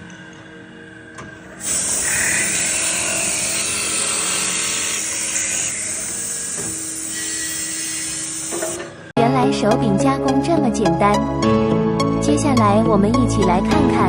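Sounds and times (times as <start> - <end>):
faint motor hum: 0.0 - 9.1
lathe cutters hissing on wood: 1.6 - 9.1.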